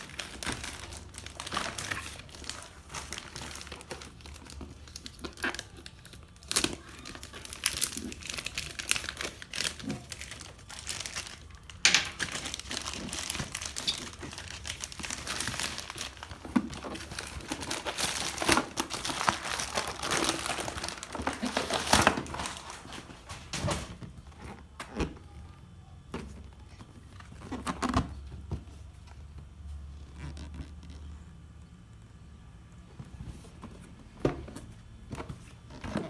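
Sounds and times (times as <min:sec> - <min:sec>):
plastic and paper crinkling: 0:00.0 - 0:25.4.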